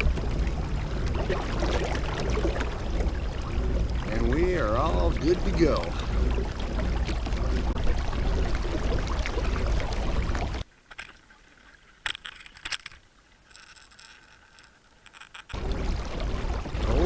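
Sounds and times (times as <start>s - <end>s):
wind rumble on microphone: 0.0s - 10.6s, 15.6s - 17.0s
water rushing along a kayak: 0.0s - 12.1s, 15.4s - 17.0s.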